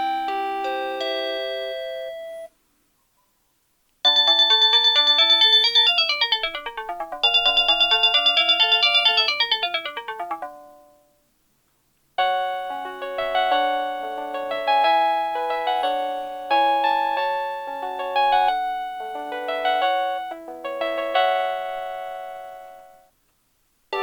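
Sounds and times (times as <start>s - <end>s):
phone ringtone melody: 4.1s - 11.1s, 12.2s - 23.0s.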